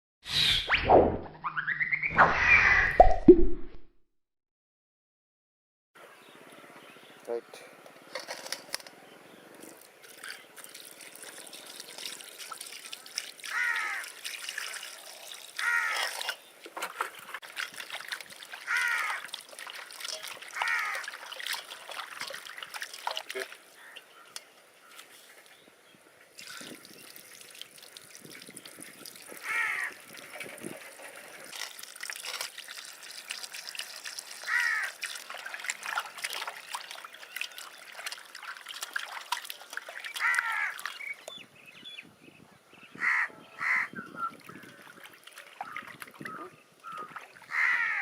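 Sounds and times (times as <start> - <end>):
trickling water: 9.5 - 25.1, 26.3 - 41.5, 44.1 - 48.0
crows cawing: 13.5 - 14.2, 15.6 - 16.2, 18.6 - 19.3, 20.5 - 21.2, 29.4 - 30.0, 34.4 - 35.0, 40.2 - 40.9, 43.0 - 43.9, 46.8 - 48.0.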